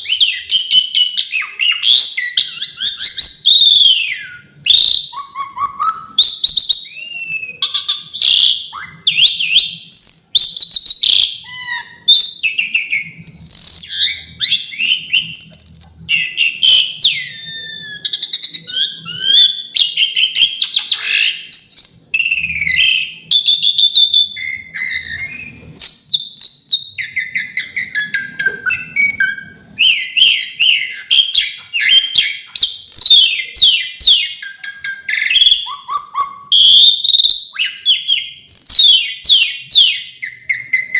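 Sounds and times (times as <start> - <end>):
starling singing: 0.0 - 40.9.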